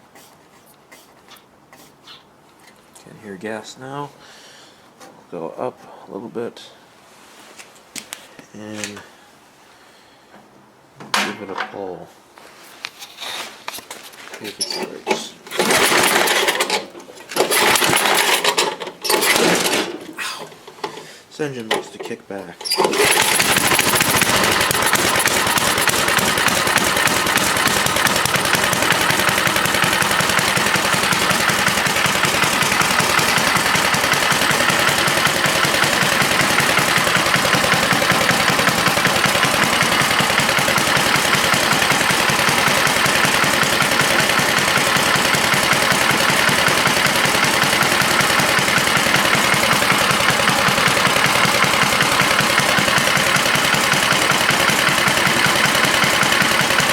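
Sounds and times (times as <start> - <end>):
person talking: 3.0 - 4.2, 5.3 - 6.8, 8.5 - 9.1, 11.1 - 12.2, 14.4 - 15.4, 21.3 - 22.6
snowblower engine running: 15.1 - 22.0, 22.6 - 56.9.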